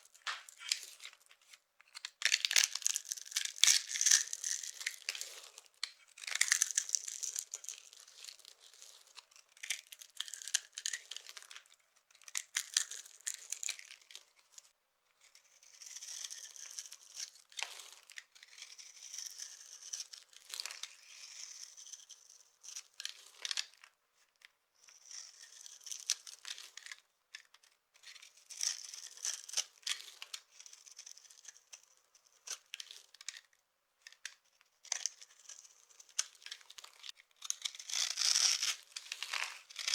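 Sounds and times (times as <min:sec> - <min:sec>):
dry block being crushed: 0:02.0 - 0:05.3, 0:06.2 - 0:07.5, 0:36.2 - 0:39.9.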